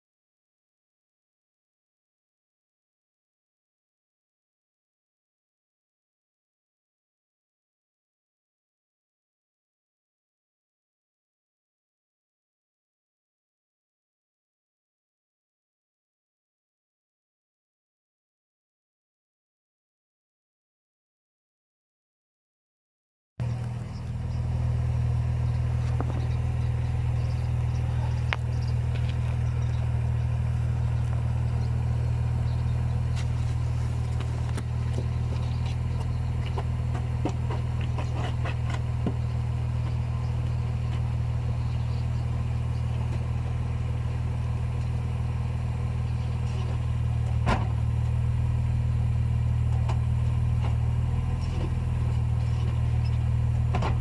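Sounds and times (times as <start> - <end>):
car engine idling: 23.4 - 54.0.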